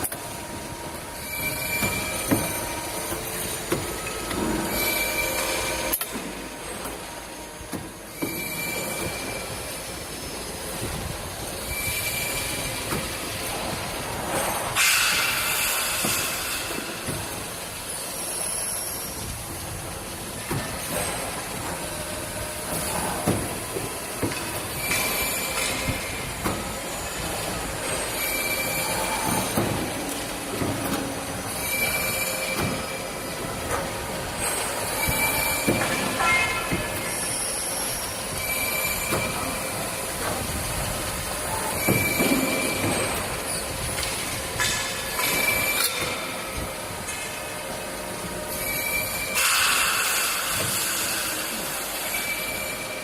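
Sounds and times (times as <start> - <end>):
tube bending machine running: 0.0 - 53.0
short high machine squeals: 1.1 - 6.0, 8.1 - 10.4, 11.6 - 12.9, 24.7 - 29.7, 31.4 - 33.3, 34.4 - 40.1, 45.1 - 46.5, 48.5 - 53.0.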